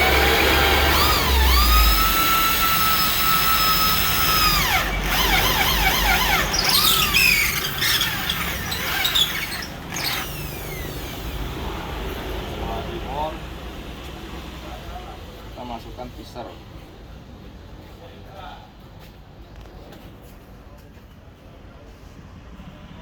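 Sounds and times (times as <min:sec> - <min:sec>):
electric drill whining: 0:00.0 - 0:11.5.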